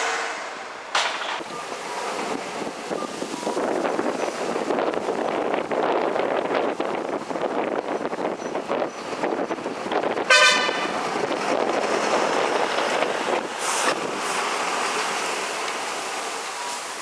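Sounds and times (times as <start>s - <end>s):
truck air horn blast: 0.0s - 0.9s, 10.3s - 11.1s
trucks driving: 0.0s - 17.0s.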